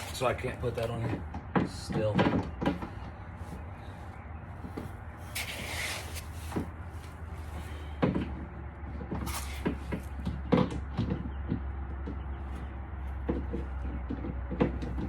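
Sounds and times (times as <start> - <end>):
steady low hum: 0.0 - 15.0
short rustle: 4.6 - 7.8, 9.2 - 10.0.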